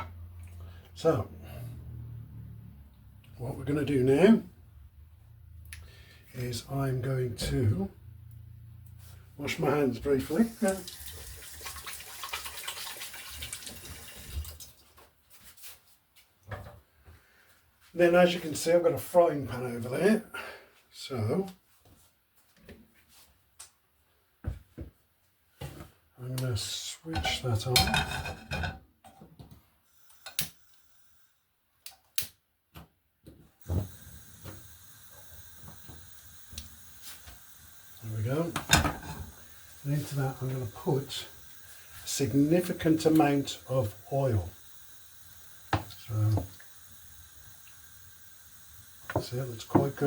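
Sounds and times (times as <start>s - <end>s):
steady gas hiss: 8.9s - 12.6s, 33.6s - 50.0s.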